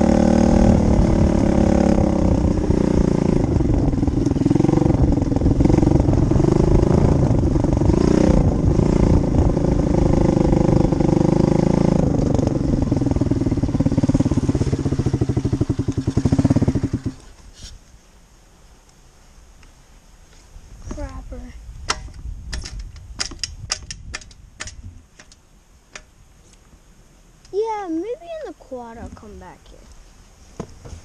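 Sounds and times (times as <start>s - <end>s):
small off-road vehicle engine: 0.0s - 17.5s.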